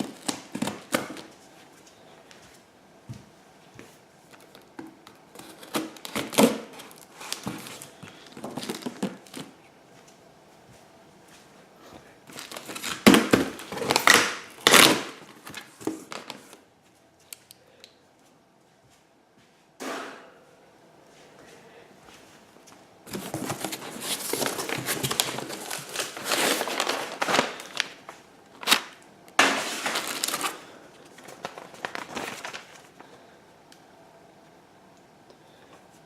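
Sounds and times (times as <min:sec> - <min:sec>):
packing tape cut and torn: 0:04.4 - 0:07.8, 0:12.3 - 0:16.4, 0:28.6 - 0:30.6
packing material rustling: 0:12.3 - 0:16.6, 0:23.1 - 0:33.1.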